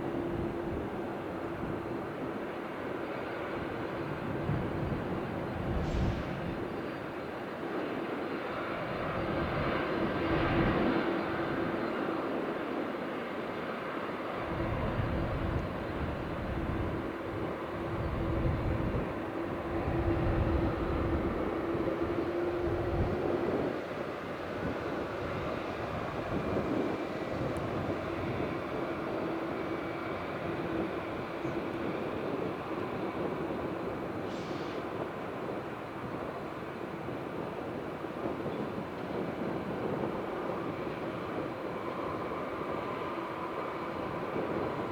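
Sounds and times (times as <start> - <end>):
jet engines at takeoff: 0.0 - 44.9.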